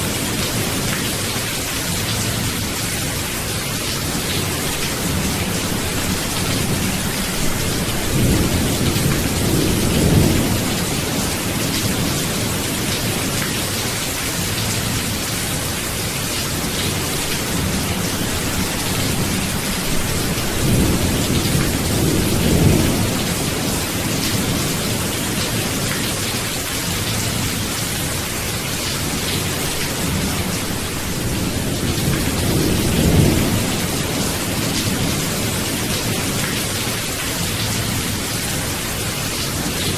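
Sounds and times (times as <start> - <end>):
steady rain falling: 0.0 - 39.9
rolling thunder: 5.9 - 12.6, 17.6 - 25.0.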